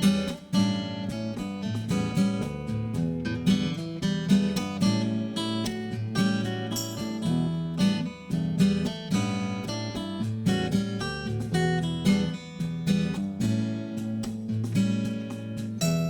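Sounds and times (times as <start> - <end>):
acoustic guitar strumming chords: 0.0 - 16.0.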